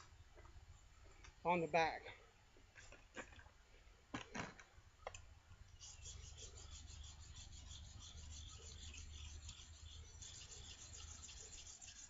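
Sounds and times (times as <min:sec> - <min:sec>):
plane iron scraping on sharpening plate: 0:05.8 - 0:12.0.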